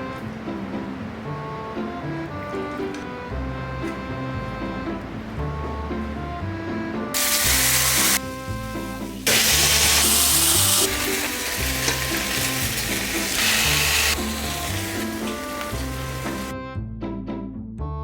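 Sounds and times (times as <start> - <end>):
background music: 0.0 - 18.0
meat sizzling: 7.2 - 16.5.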